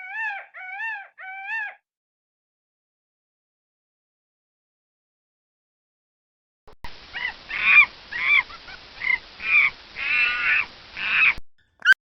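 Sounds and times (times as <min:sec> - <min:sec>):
bird giving loud calls: 0:07.1 - 0:11.4.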